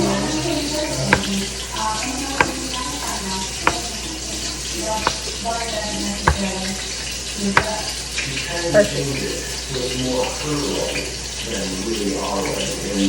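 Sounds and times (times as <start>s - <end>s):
knife cutting on cutting board: 1.1s - 1.4s, 2.4s - 2.8s, 3.6s - 3.9s, 6.3s - 6.5s.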